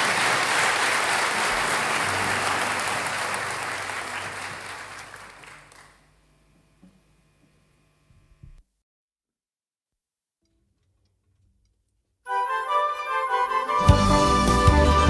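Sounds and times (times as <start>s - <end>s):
audience applauding: 0.0s - 6.1s
faint hum: 0.0s - 8.6s.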